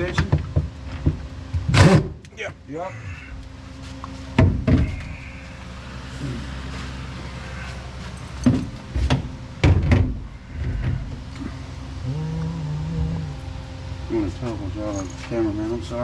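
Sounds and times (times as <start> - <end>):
low mechanical hum: 4.8 - 15.4.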